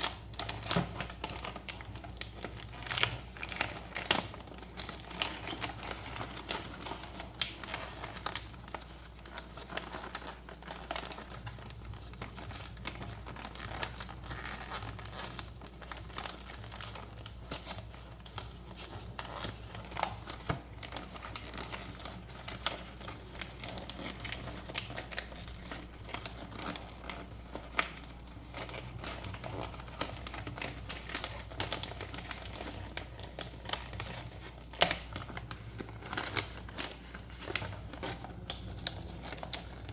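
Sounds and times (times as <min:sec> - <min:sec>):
plastic packaging crinkling: 0:00.0 - 0:39.9.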